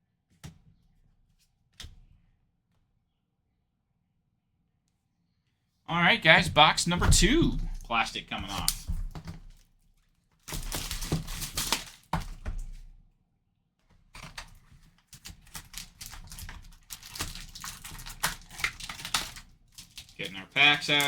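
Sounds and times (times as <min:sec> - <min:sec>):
plastic wrap crinkling and tearing: 0:10.4 - 0:12.4, 0:14.2 - 0:21.0.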